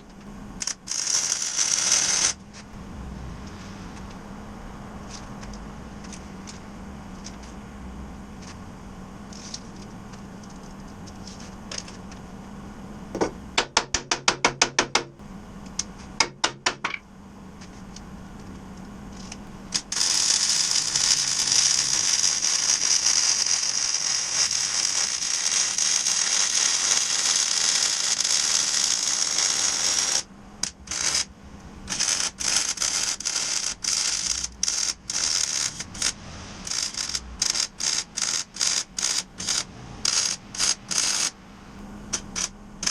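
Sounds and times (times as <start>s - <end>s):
steady hissing: 19.1s - 42.9s.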